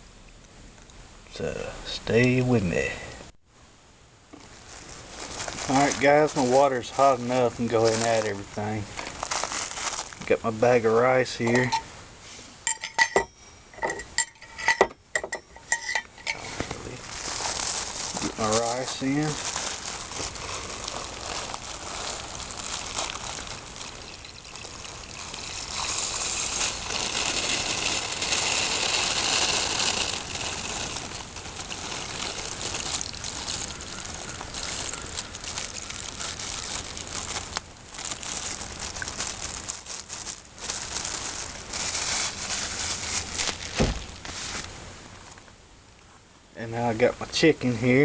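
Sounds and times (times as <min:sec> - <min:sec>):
water pouring and stirring in a pot: 0:19.0 - 0:38.2.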